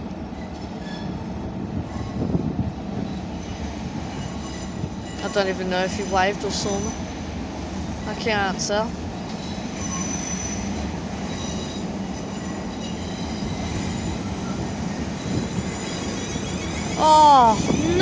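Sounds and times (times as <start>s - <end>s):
train rumbling: 0.0s - 18.0s
wheels squealing on rails: 0.4s - 1.2s, 3.0s - 7.1s, 9.2s - 17.9s.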